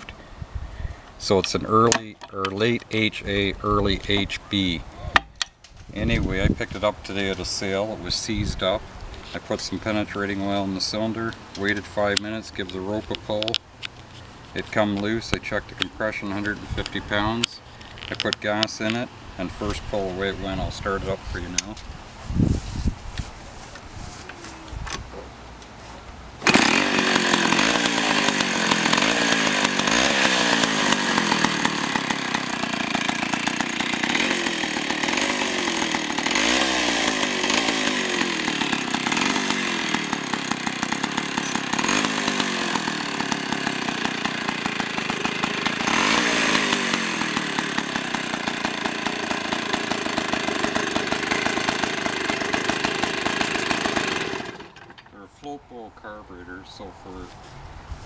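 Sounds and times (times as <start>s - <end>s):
chainsaw revving: 1.3s - 3.1s, 26.4s - 55.2s.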